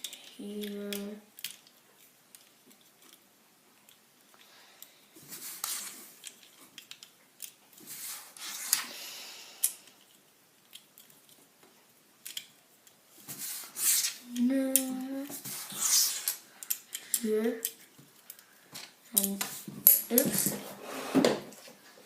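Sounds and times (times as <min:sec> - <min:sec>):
plastic bricks clicking and rustling: 0:00.0 - 0:03.2, 0:05.6 - 0:07.6, 0:12.2 - 0:13.0.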